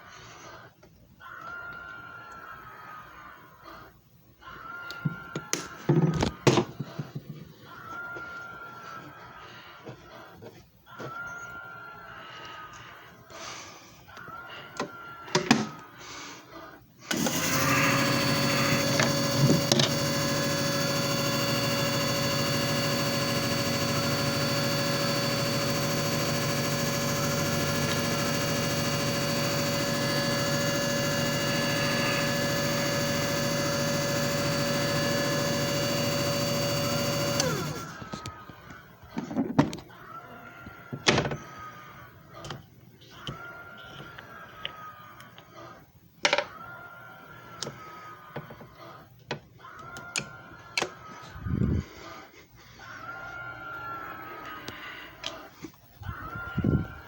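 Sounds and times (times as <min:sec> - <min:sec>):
machine motor hum with whine: 0:17.1 - 0:38.4.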